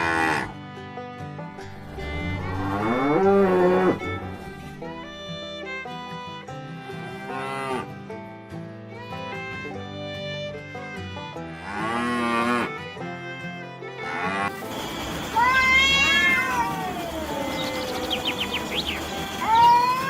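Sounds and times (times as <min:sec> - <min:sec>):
string music: 0:00.0 - 0:20.0
sheep bleating: 0:15.4 - 0:17.7.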